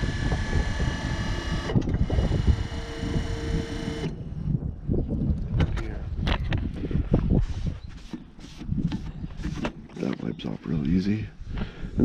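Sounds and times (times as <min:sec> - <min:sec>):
electric motor whine: 0:00.0 - 0:04.2
motor hum: 0:00.0 - 0:04.2.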